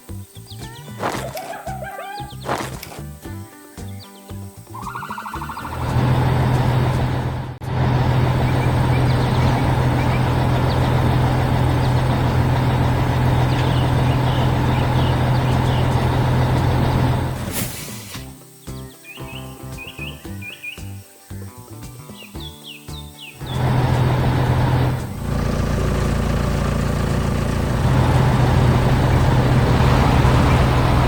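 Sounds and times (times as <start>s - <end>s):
faint bird chirps: 0.3s - 2.7s, 3.8s - 6.0s, 18.6s - 21.1s
heavy vehicle engine rumbling: 5.4s - 18.3s, 23.4s - 31.0s.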